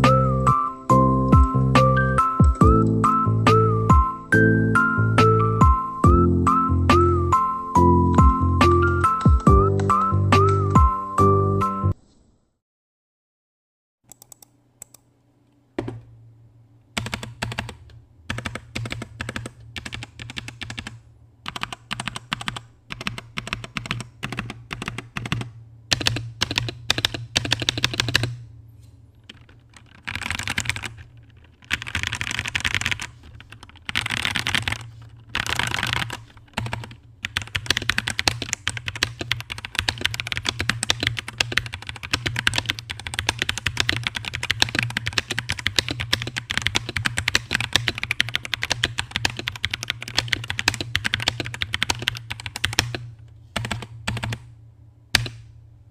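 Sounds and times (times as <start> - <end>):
mechanical keyboard typing: 8.1 - 10.8, 14.1 - 15.0, 17.0 - 28.4, 29.2 - 54.5, 55.2 - 55.5.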